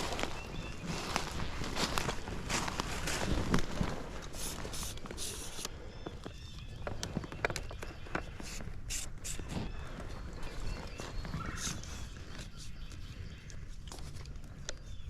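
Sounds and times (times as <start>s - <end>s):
footsteps in leaf litter: 0.0s - 5.6s
brush rustling: 0.0s - 15.0s.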